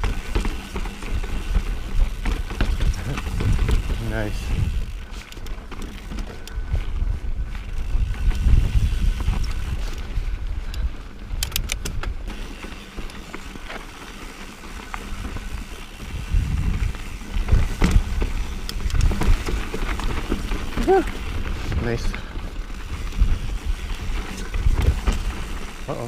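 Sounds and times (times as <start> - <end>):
bike tyres rumbling over ground: 0.0 - 26.0
wind buffeting microphone: 1.2 - 5.2, 6.0 - 12.6, 15.1 - 25.9
quick run of clicks: 7.8 - 20.9.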